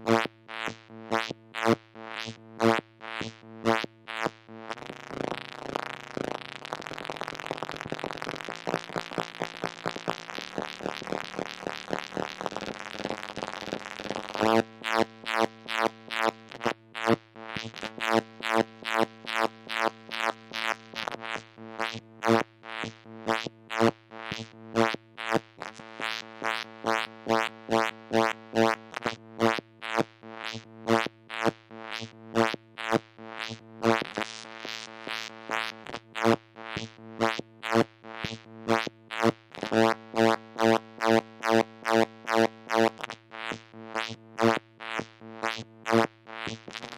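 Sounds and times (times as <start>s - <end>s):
synthesizer buzzing and pulsing: 1.2s - 16.7s.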